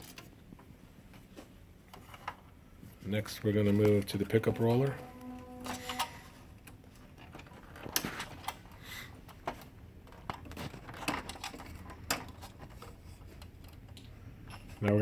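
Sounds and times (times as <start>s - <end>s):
printer parts clicking: 5.2s - 15.0s.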